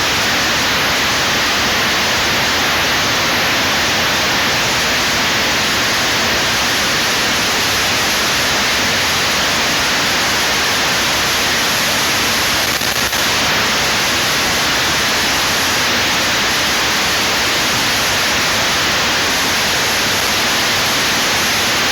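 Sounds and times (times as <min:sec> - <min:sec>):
loud static hiss: 0:00.0 - 0:21.9.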